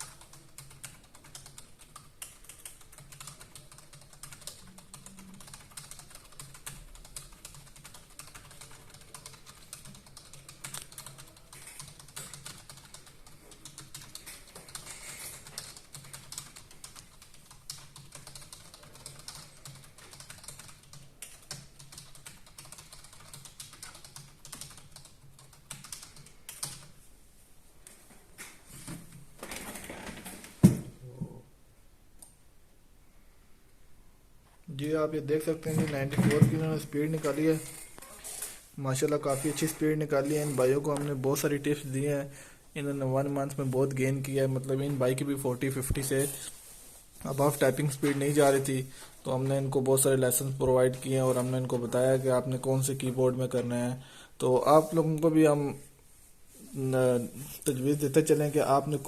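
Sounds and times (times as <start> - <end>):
fast typing on keyboard: 0.0 - 27.0.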